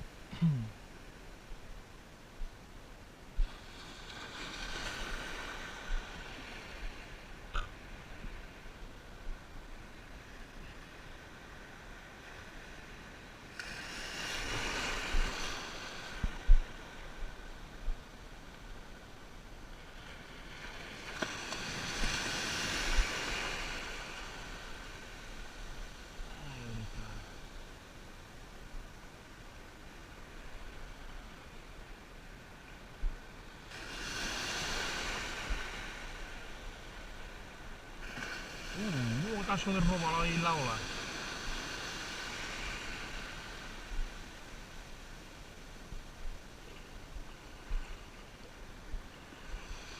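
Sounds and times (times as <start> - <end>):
wave washing in: 3.3 - 8.6, 13.4 - 18.0, 20.1 - 27.5, 33.6 - 48.2.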